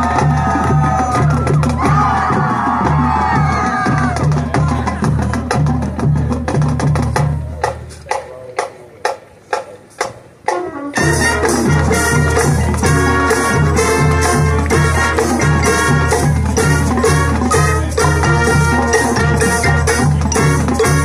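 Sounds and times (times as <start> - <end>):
marching band playing: 0.0 - 21.0
sharp percussion hits: 11.0 - 21.0.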